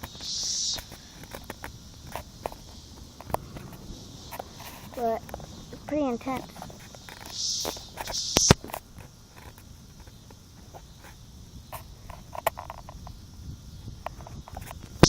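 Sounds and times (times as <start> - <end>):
insects chirring: 0.0 - 15.0
sharp clicks: 6.3 - 8.8.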